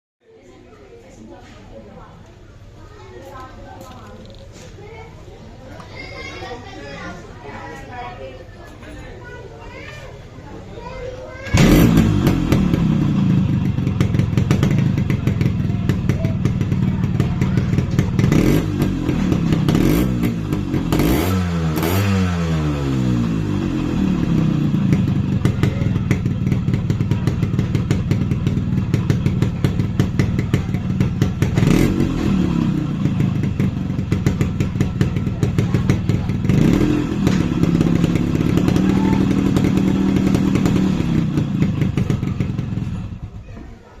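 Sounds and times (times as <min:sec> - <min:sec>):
two-stroke motorcycle engine revving: 0:11.5 - 0:43.4.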